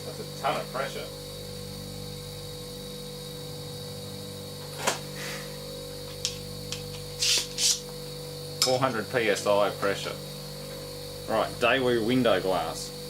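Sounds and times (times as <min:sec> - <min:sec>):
electrical hum: 0:00.0 - 0:13.0
brief hiss: 0:07.2 - 0:07.8.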